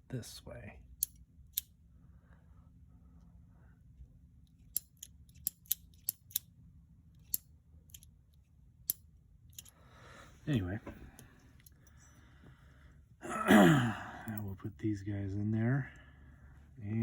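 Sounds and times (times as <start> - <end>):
revolver parts clicking: 4.4 - 6.5, 7.1 - 9.9.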